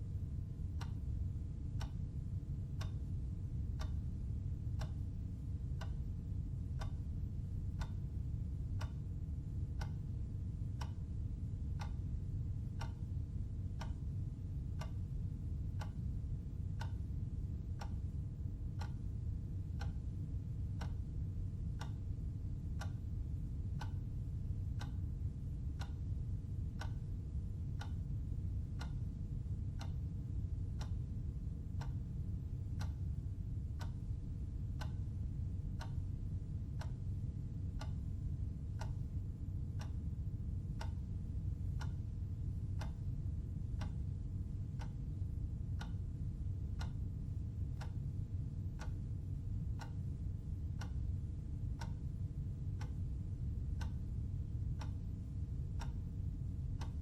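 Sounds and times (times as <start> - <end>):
clock ticking: 0.6 - 1.0, 1.7 - 6.1, 6.7 - 9.1, 9.7 - 10.1, 10.7 - 11.0, 11.7 - 13.1, 13.7 - 16.2, 16.8 - 19.1, 19.7 - 21.1, 21.7 - 22.1, 22.7 - 23.1, 23.7 - 27.1, 27.7 - 31.0, 31.6 - 33.2, 33.8 - 40.1, 40.7 - 44.1, 44.7 - 55.2, 55.8 - 57.0.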